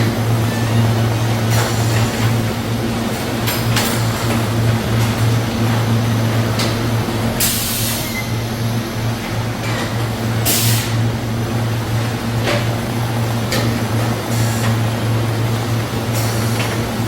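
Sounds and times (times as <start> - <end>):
machinery electrical hum: 0.0 - 17.0
short air hisses: 7.4 - 8.2, 10.5 - 11.0.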